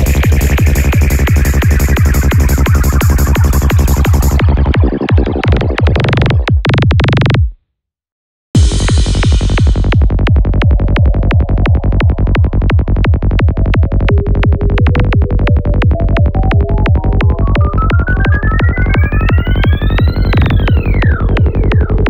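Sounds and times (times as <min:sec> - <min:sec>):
rising synth line: 0:00.0 - 0:06.4, 0:13.5 - 0:22.0
electronic dance music: 0:00.0 - 0:07.5, 0:08.6 - 0:22.0.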